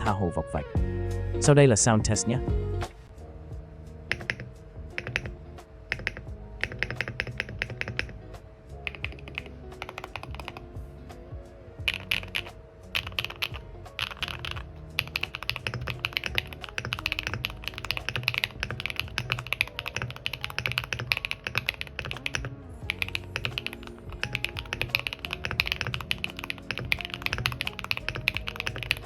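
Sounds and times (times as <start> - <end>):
background music: 0.0 - 29.0
fast mechanical keyboard typing: 4.1 - 8.2, 8.9 - 10.6, 11.9 - 29.0.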